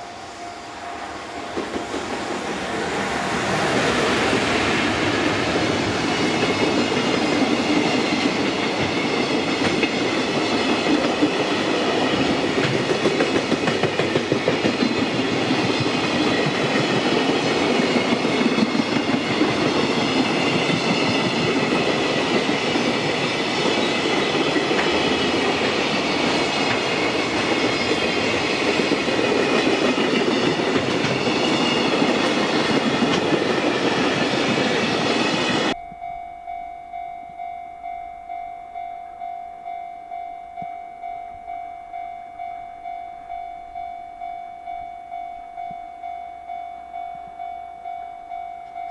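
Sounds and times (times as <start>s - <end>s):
train wagons rumbling past: 0.0s - 36.1s.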